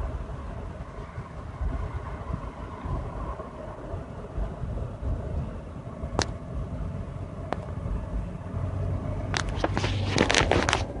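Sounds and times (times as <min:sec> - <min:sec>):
pickup engine low rumble: 0:00.0 - 0:11.0.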